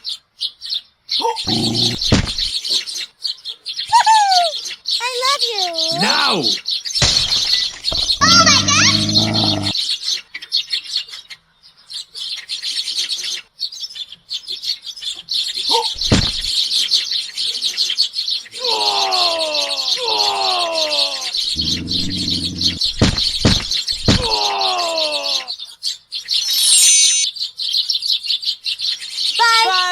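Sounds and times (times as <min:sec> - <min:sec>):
sparrows chirping: 0:01.5 - 0:02.5, 0:03.2 - 0:09.8, 0:19.2 - 0:24.3.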